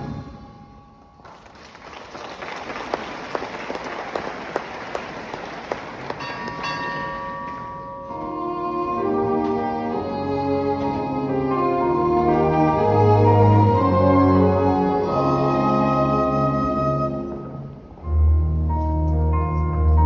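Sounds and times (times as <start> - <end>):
audience applauding: 1.2 - 7.1
sharp single claps: 1.3 - 7.0
brass-led orchestral music: 8.3 - 18.8.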